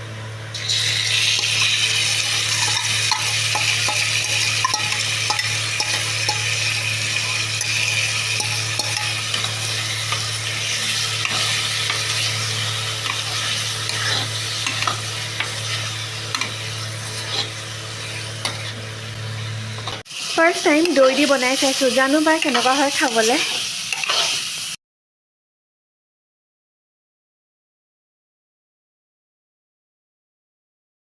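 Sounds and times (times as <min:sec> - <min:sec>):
food sizzling in a pan: 0:00.6 - 0:24.8.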